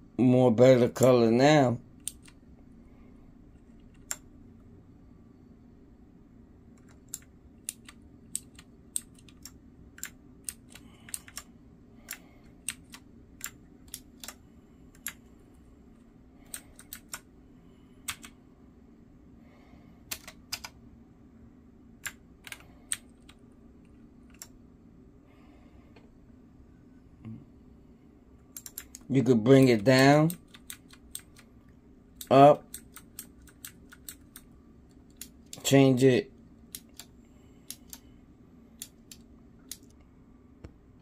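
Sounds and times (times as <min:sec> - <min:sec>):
faint steady hum: 0:00.0 - 0:41.0
mechanical keyboard keys clicking: 0:06.8 - 0:11.5, 0:16.5 - 0:17.2, 0:20.1 - 0:20.8, 0:28.5 - 0:29.1, 0:30.2 - 0:31.5, 0:32.2 - 0:34.5.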